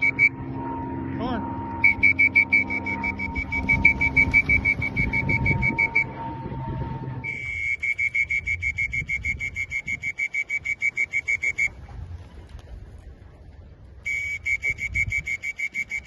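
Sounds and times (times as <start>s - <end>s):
high whistle-like beeping: 0.0s - 0.7s, 1.6s - 11.8s, 14.1s - 16.0s
low rumble: 0.0s - 10.1s, 11.2s - 15.3s
steady low tone: 0.0s - 10.2s.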